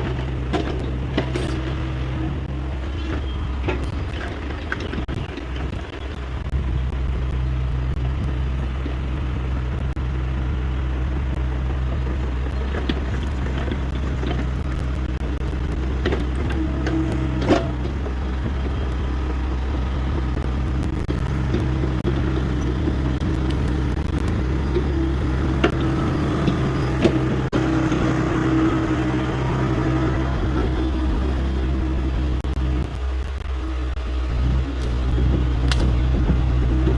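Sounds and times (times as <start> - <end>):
excavator diesel engine running: 0.0 - 36.9
high whine: 13.2 - 36.9.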